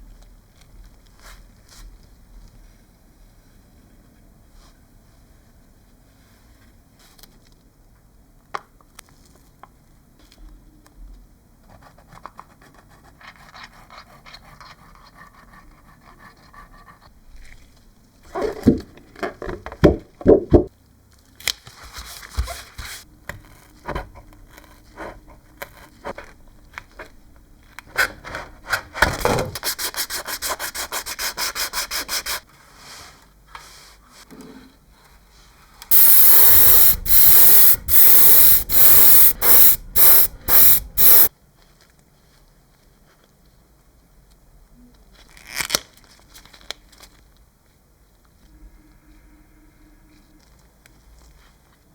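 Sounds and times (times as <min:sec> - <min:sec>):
hand sanding strokes on a surface: 0:35.9 - 0:41.3
spray hiss: 0:35.9 - 0:41.3.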